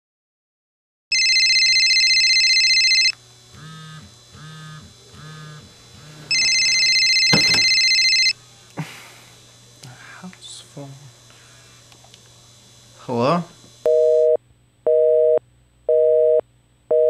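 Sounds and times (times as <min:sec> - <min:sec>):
telephone ringing electronic trill: 0:01.1 - 0:03.1, 0:06.3 - 0:08.4
short low buzzy tones: 0:03.5 - 0:06.3.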